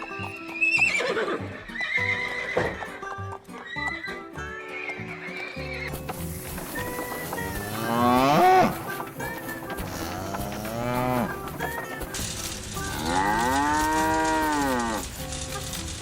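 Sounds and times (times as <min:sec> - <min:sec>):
background music: 0:00.0 - 0:16.0
cow mooing: 0:07.5 - 0:08.9, 0:09.8 - 0:11.6, 0:12.8 - 0:15.1.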